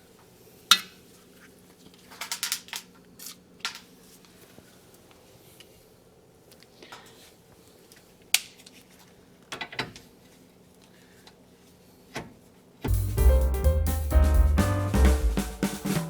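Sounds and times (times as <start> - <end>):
backing music with drum kit: 12.9 - 16.0.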